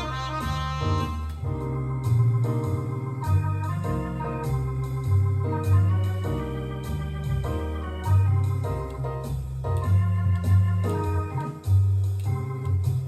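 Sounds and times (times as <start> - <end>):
sustained bass line: 0.0 - 13.0.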